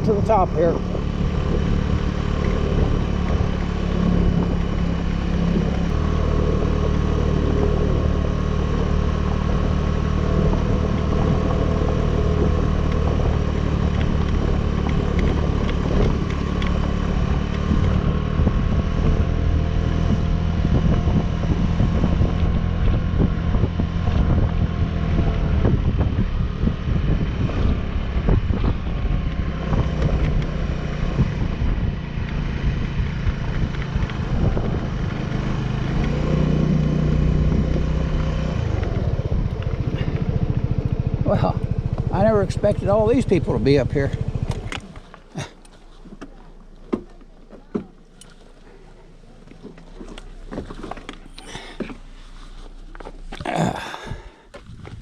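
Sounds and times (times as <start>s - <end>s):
scooter engine running: 0.0s - 55.0s
wind noise on microphone: 9.4s - 45.5s, 53.2s - 55.0s.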